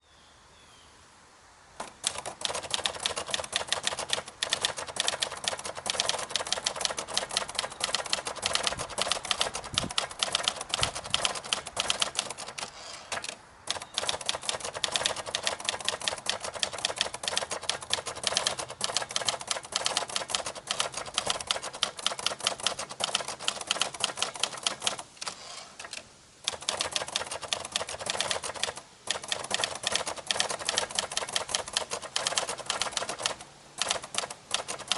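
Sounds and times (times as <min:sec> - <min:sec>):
manual typewriter typing: 0:01.8 - 0:34.9.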